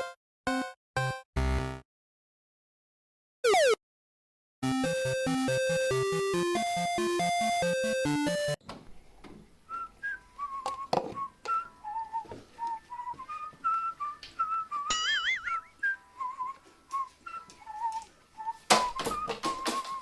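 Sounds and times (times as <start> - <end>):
whistled tune: 9.7 - 20.0.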